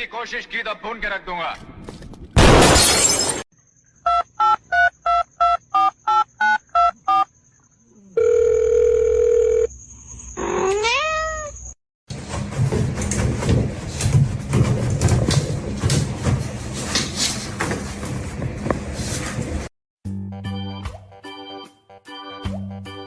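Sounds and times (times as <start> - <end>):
steady phone tone: 8.2 - 9.7
cat meowing: 10.5 - 11.6.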